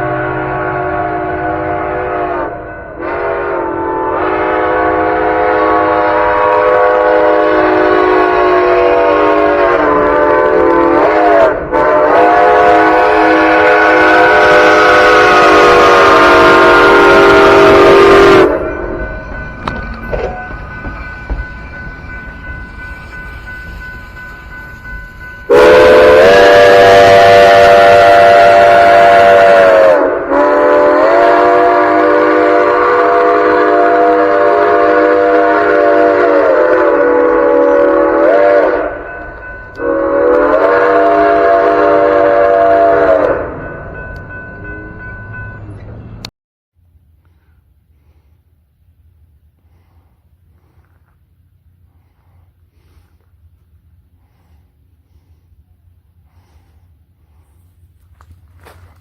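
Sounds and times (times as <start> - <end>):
steam locomotive chime whistle: 0.0 - 46.3.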